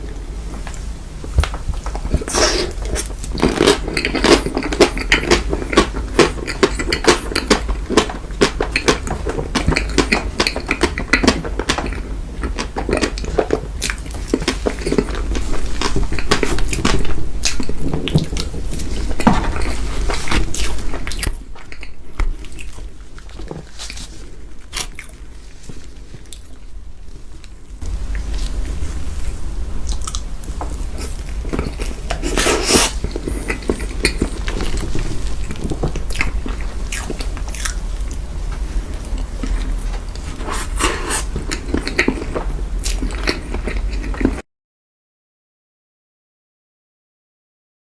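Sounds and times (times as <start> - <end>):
chewing: 1.8 - 26.7, 29.8 - 38.2, 38.9 - 44.4.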